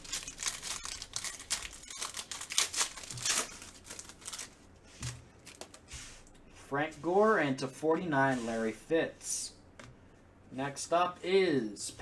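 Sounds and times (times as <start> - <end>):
cards crinkling and rustling: 0.0 - 6.2.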